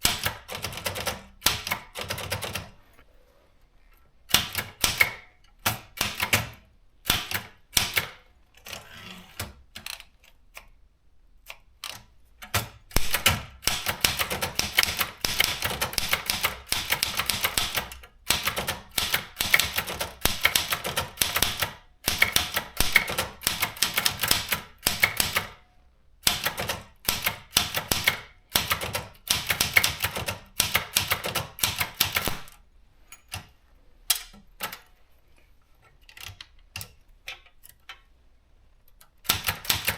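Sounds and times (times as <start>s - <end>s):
typewriter key strikes: 11.8s - 25.6s, 39.3s - 39.9s.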